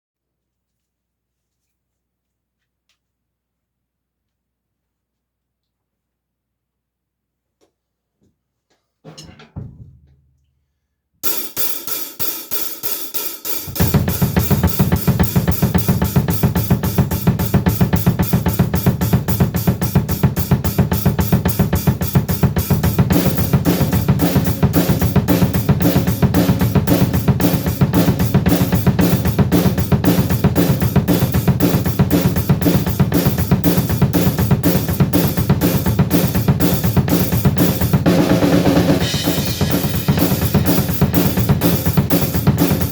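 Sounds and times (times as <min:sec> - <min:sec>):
hi-hat: 0:11.2 - 0:37.4
cymbals: 0:11.2 - 0:42.9
double bass drum pattern: 0:11.2 - 0:42.9
snare drum: 0:11.2 - 0:42.9.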